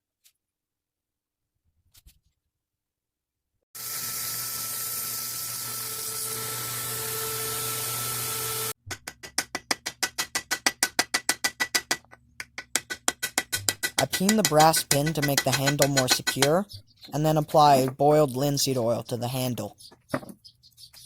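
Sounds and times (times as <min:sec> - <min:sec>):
power tool running: 0:03.8 - 0:08.8
small hammer tapping on metal: 0:08.9 - 0:16.6.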